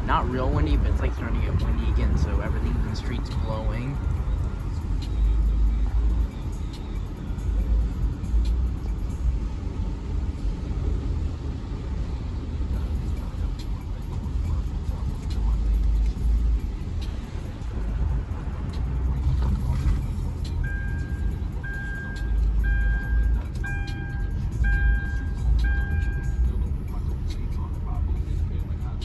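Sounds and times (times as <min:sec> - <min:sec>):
wind gusts buffeting: 0:00.0 - 0:05.0
car driving rumble: 0:00.0 - 0:29.0
electronic beeping chime: 0:20.6 - 0:26.4.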